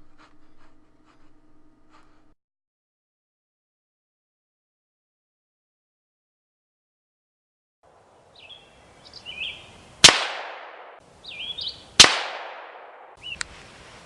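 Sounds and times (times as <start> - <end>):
birds chirping: 8.0 - 13.6
rifle shots with echo: 10.0 - 11.0, 12.0 - 13.2.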